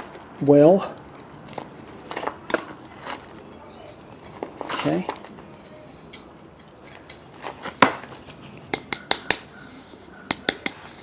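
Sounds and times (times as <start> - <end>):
stick poking soil: 8.4 - 11.0
stick knocking against pot: 10.2 - 10.8.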